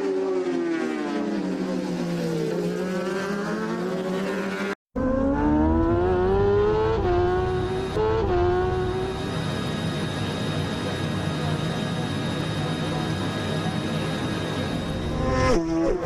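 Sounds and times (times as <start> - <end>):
racing motorcycle engine: 0.0 - 10.1, 14.7 - 16.0.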